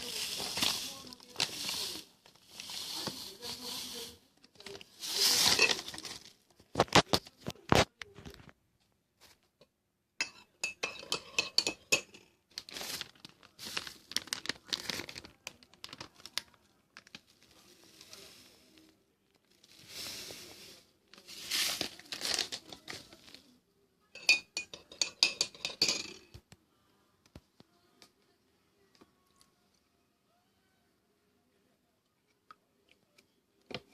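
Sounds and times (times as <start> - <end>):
plastic wrapper crinkling and tearing: 0.0 - 8.5, 12.5 - 20.5, 21.1 - 23.5.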